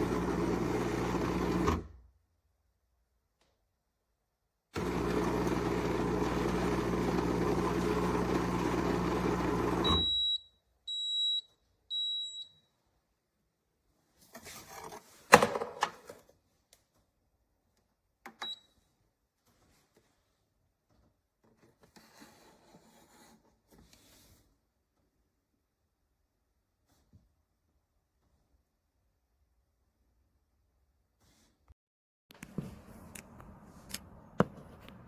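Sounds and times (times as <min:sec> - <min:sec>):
espresso machine pump buzzing: 0:00.0 - 0:01.8, 0:04.8 - 0:10.0
machine beeps: 0:09.8 - 0:12.6.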